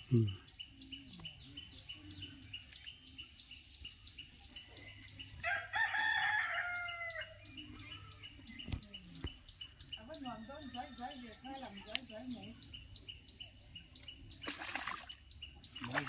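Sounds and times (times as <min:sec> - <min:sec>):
rooster crowing: 0:05.4 - 0:07.4.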